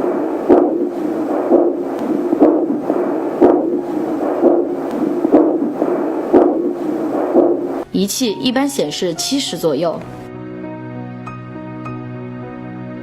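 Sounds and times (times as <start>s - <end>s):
whooshing pulse from doppler speaker: 0.0s - 7.9s.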